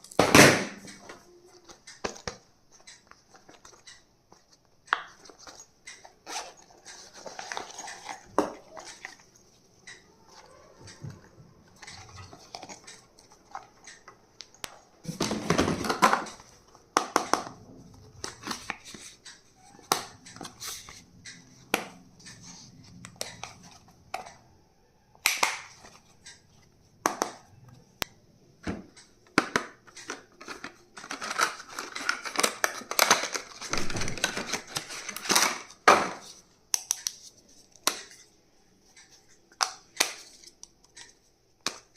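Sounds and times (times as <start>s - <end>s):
packaging rustling and crinkling: 5.2s - 9.3s, 30.2s - 36.4s.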